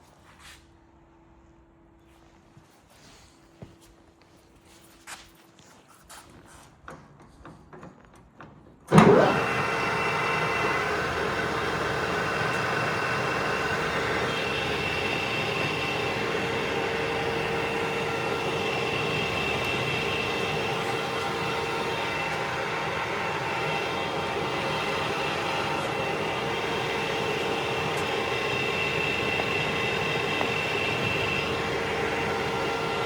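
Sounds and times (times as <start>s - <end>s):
lathe motor running with whine: 8.9s - 33.0s.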